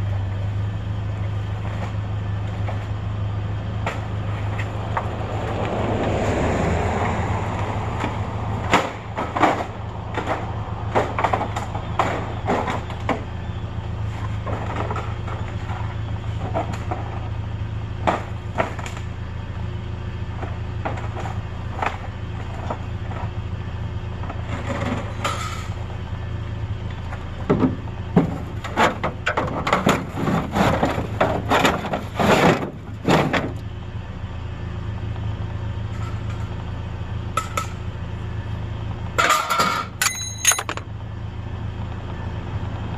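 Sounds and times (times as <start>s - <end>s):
vehicle engine humming: 0.0s - 42.9s
hard objects knocking and clattering: 39.2s - 40.9s.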